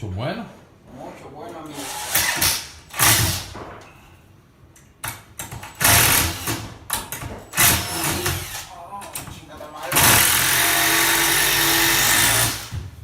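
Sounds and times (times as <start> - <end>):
power tool rattling: 5.5 - 8.7, 9.9 - 12.8.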